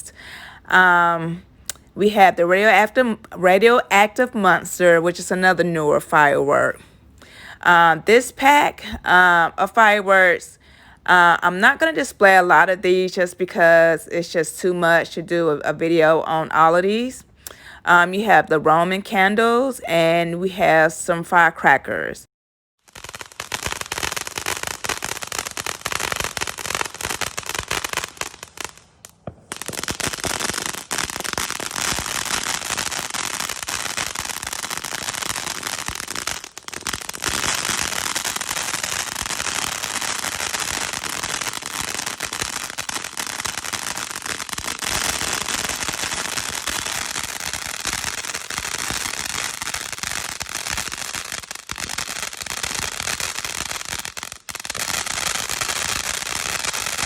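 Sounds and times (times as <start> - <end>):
firework cake popping and crackling: 22.8 - 57.0.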